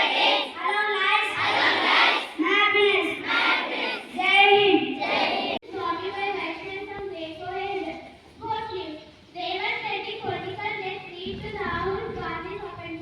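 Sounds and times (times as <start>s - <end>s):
children singing together: 0.0s - 0.6s, 1.2s - 2.4s, 3.0s - 5.6s.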